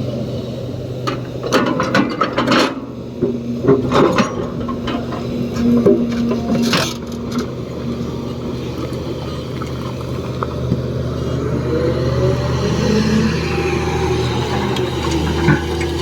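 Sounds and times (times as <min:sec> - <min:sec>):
excavator diesel engine running: 0:00.0 - 0:16.0.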